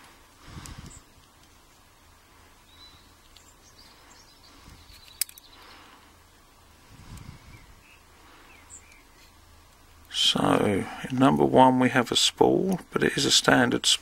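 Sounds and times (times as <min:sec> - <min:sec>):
handling small padlock parts: 0:04.8 - 0:05.5.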